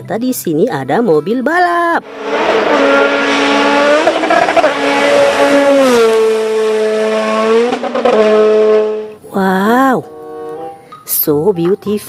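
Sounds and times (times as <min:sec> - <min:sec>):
race car engine high revs: 0:02.0 - 0:09.2.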